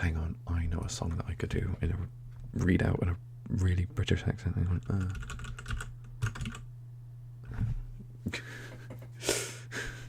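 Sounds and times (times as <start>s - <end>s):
low electrical hum: 0.0s - 10.0s
typing on computer keyboard: 4.7s - 6.6s.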